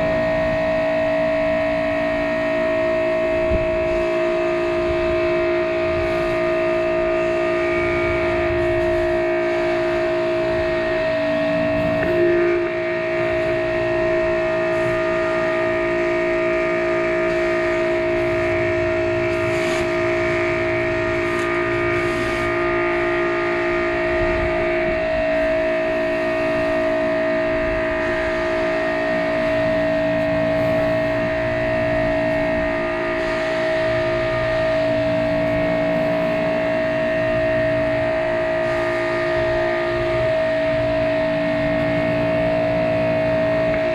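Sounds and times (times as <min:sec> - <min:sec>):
pressure washer whine: 0:00.0 - 0:43.9.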